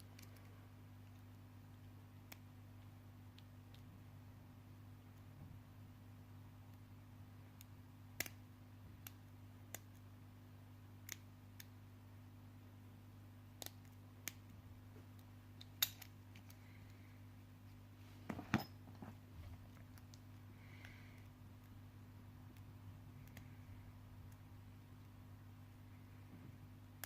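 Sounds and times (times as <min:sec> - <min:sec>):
lock picks clicking: 0:15.6 - 0:16.6.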